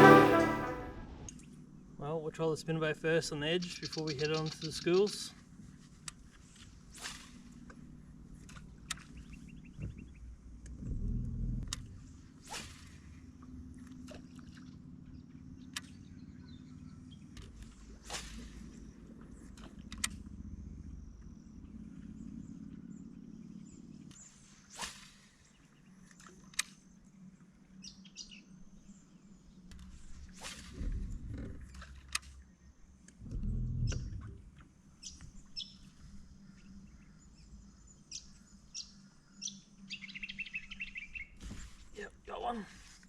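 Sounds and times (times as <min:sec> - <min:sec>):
low rumble: 0:33.2 - 0:34.6.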